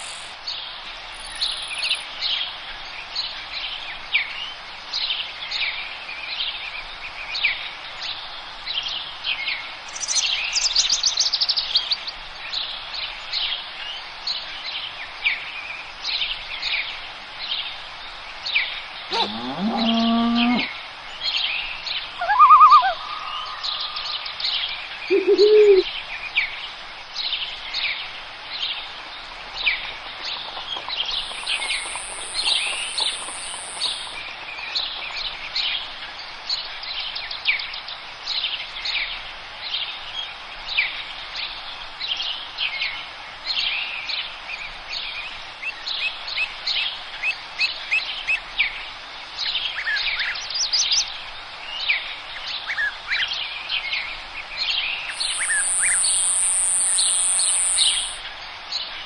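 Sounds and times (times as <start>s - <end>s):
forest birds chirping and singing: 0.0s - 59.0s
high-pitched buzz: 55.2s - 58.2s.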